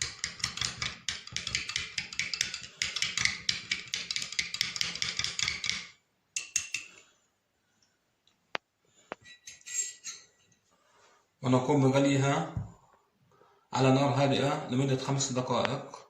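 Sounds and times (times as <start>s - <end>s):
spoon clinking against glass: 6.4s - 7.0s.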